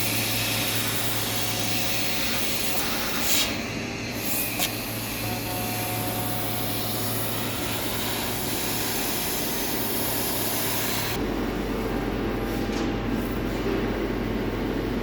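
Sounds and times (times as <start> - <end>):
laser cutter hissing: 0.2 - 11.2
low machine hum: 4.8 - 15.0.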